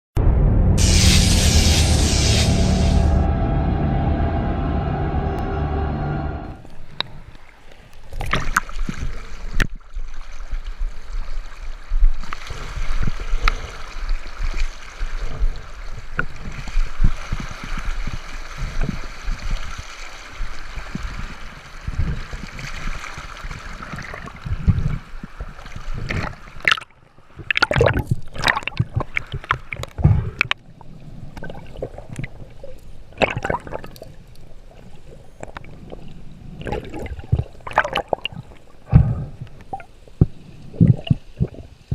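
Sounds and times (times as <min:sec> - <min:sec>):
bubbling and splashing: 0:20.4 - 0:41.9
underwater river current rushing: 0:33.2 - 0:41.9.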